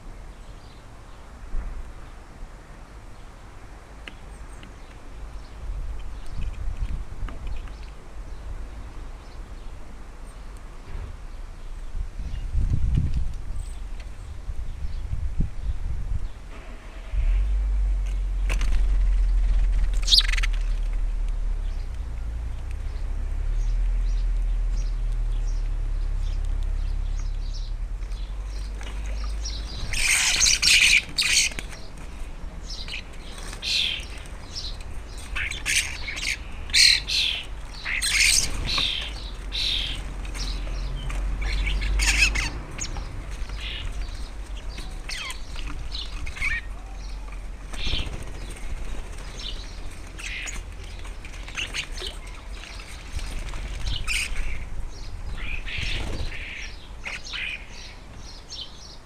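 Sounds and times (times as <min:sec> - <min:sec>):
low steady rumble: 0:11.9 - 0:30.8
birds calling: 0:16.2 - 0:22.0, 0:22.6 - 0:59.0.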